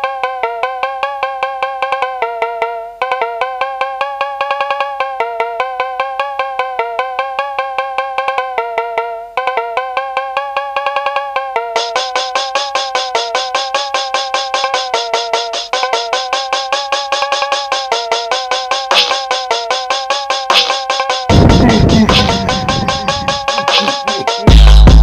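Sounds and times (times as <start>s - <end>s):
looped clicky mallet melody: 9.4s - 21.5s.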